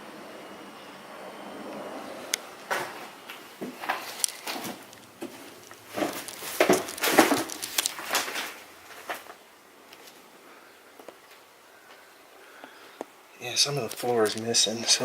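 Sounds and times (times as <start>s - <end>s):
footsteps on wooden floor: 2.7s - 9.3s
wooden floor creaking: 2.7s - 9.4s.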